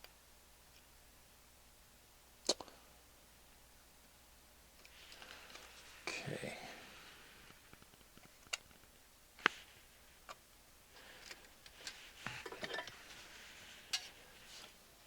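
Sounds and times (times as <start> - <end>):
small taps and rustles: 7.4 - 10.4.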